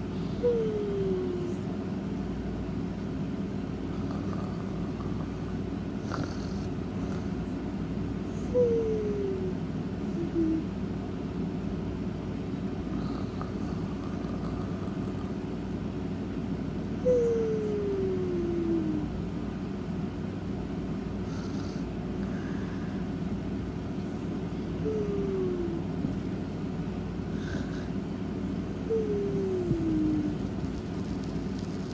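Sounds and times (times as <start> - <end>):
animal snoring: 3.9 - 7.5, 12.9 - 15.4, 21.2 - 22.7, 27.3 - 28.0.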